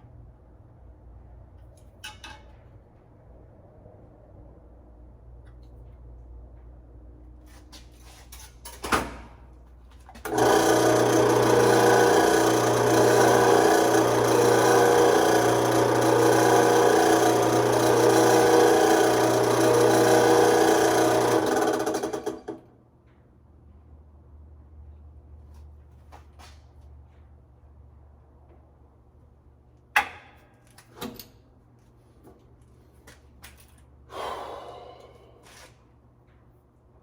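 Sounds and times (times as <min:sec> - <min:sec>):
drill press whirring: 0:10.2 - 0:22.6.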